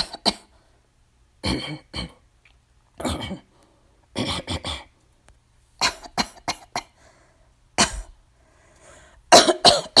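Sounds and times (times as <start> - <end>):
woman coughing: 0.0 - 0.5, 1.4 - 2.2, 3.0 - 3.5, 4.2 - 4.9, 5.8 - 7.0, 7.8 - 8.1, 9.3 - 10.0.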